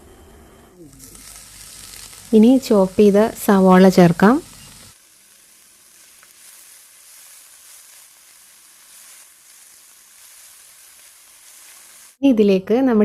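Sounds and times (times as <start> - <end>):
onion and garlic sizzling in oil: 0.9 - 12.2.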